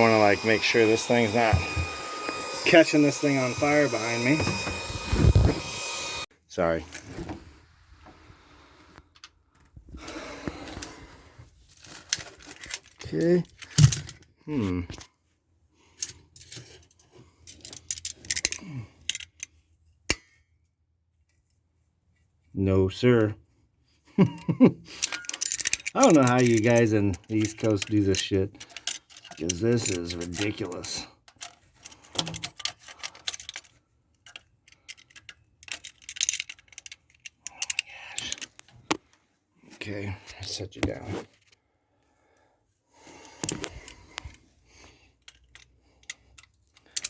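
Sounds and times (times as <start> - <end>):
metal hand tools clinking: 25.0 - 38.4.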